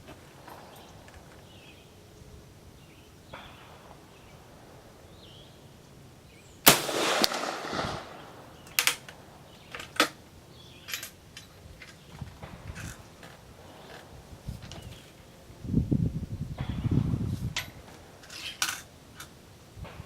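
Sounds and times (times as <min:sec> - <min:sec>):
rifle shot: 0:06.6 - 0:09.2.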